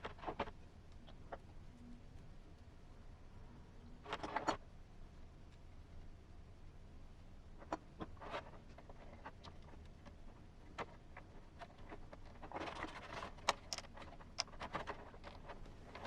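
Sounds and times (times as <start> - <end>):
clicks of small plastic parts: 11.9 - 16.0.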